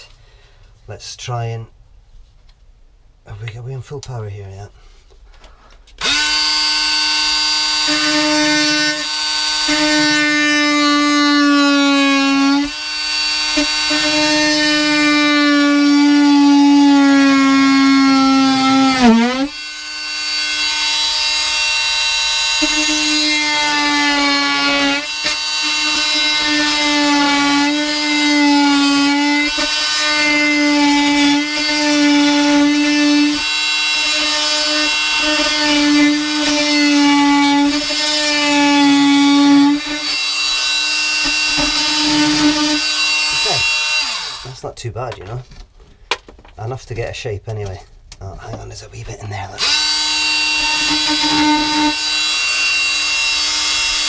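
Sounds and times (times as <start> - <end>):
oscillating multi-tool buzzing: 18.2 - 44.5.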